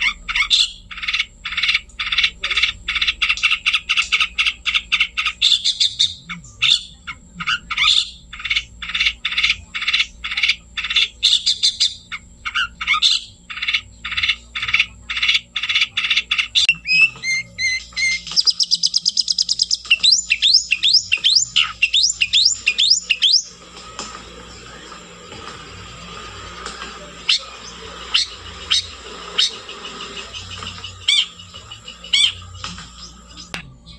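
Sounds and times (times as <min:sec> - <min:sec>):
bird singing scratchy notes: 0:00.0 - 0:33.9
rapid high bird trill: 0:00.0 - 0:33.9
sharp upward-sweeping whistles: 0:16.6 - 0:23.5.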